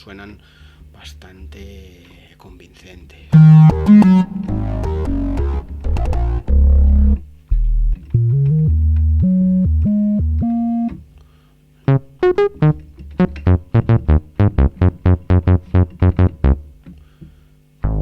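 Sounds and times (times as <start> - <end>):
deep held synth bass notes: 3.4 - 11.0, 11.9 - 16.7
staccato synth bass notes: 3.4 - 11.0, 11.9 - 16.7.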